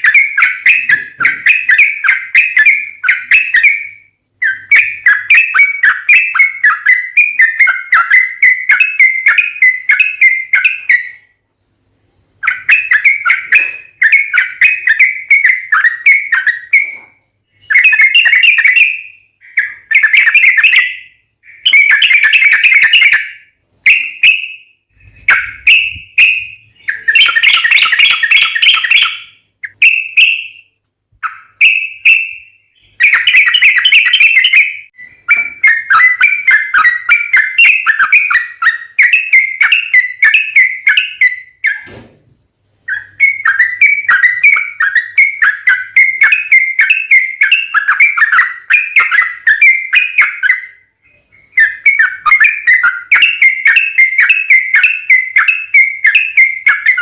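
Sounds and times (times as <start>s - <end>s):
bulbul song: 0.0s - 42.0s, 42.6s - 57.0s.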